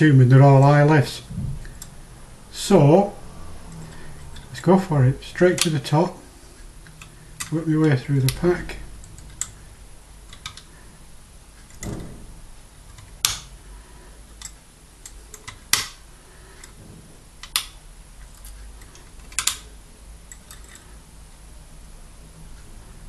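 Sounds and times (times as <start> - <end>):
lock pick clicking in lock: 12.9 - 13.5, 14.4 - 16.0, 17.4 - 17.8, 18.8 - 19.7.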